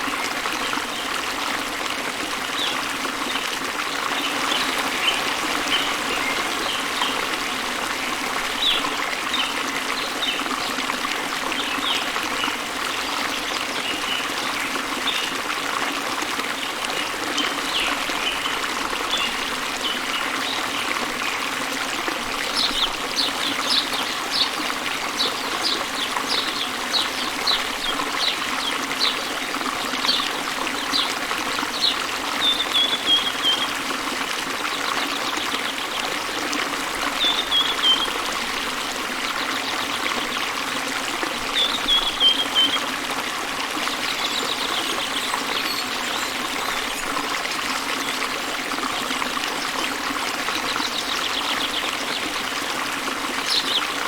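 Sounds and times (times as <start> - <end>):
waterfall rushing: 2.6 - 15.2
birds singing: 4.0 - 10.6, 22.4 - 33.8, 37.1 - 38.7, 41.5 - 43.0, 43.8 - 47.2, 49.6 - 54.0.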